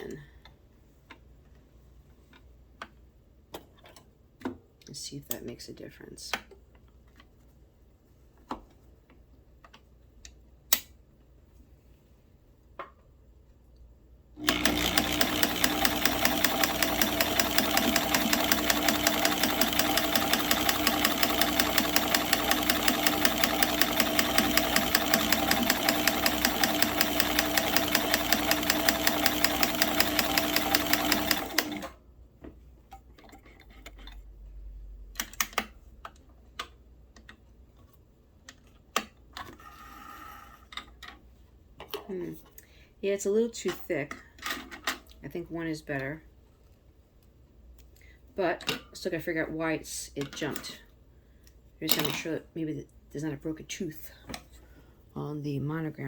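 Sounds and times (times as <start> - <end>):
ticking of stitches: 14.4 - 31.9
sewing machine motor humming: 14.4 - 32.0.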